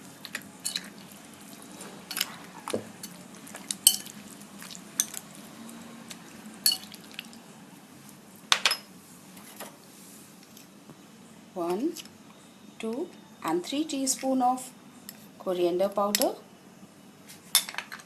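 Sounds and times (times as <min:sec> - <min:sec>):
spoon clinking against bowl: 0:06.7 - 0:07.0.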